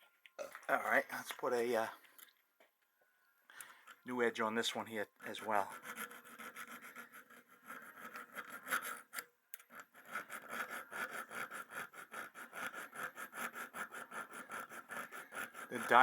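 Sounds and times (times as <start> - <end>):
file scraping on steel edge: 5.2 - 16.0.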